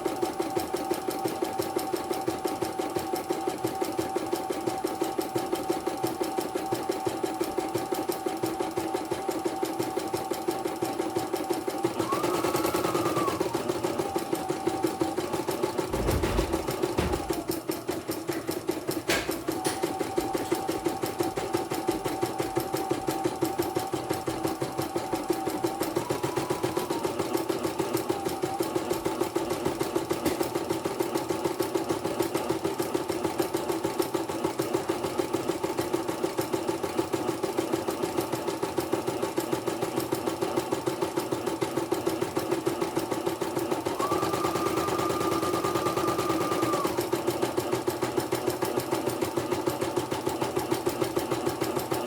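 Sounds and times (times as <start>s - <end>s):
thin machine whine: 11.8s - 18.4s, 25.0s - 28.7s, 43.9s - 47.4s.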